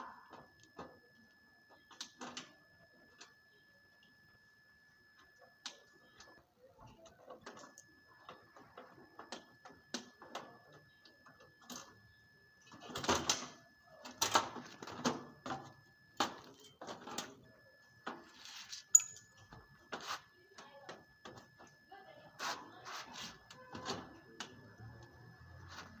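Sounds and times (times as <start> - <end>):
tools clicking and clattering: 18.9 - 19.4.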